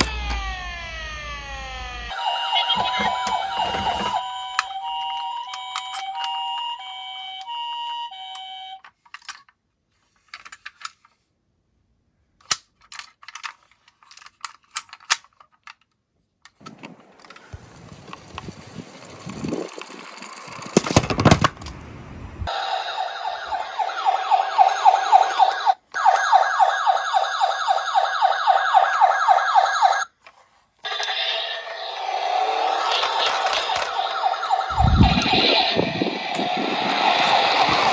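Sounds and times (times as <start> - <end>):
fast-warbling electronic siren: 0.0 - 5.2, 22.5 - 30.1, 30.9 - 37.9
two-tone hi-lo siren: 0.0 - 8.8, 22.5 - 30.1, 30.9 - 37.9
toy car rolling down a slope: 16.6 - 21.7, 30.8 - 37.9.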